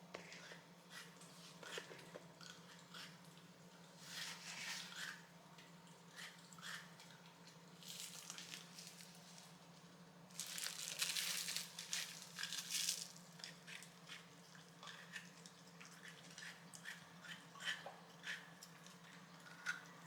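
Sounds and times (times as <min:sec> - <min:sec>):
dog crunching frozen cucumber: 0:07.8 - 0:09.6, 0:10.3 - 0:19.9.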